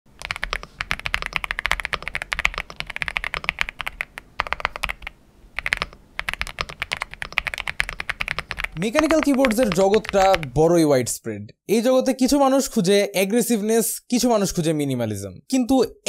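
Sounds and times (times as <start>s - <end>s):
fast typing on mechanical keyboard: 0.2s - 10.5s.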